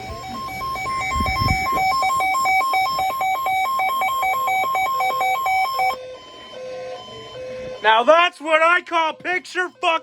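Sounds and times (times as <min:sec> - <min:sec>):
two-pitch alert beeping: 0:00.0 - 0:06.0.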